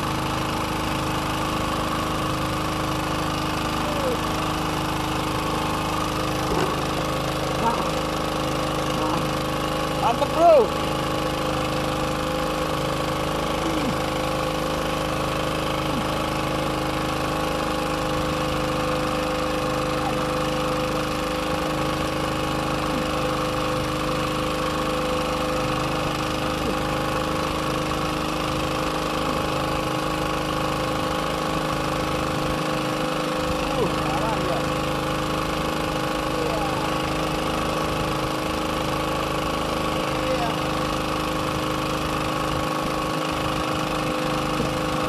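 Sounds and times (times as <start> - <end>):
boat engine idling: 0.0 - 45.0.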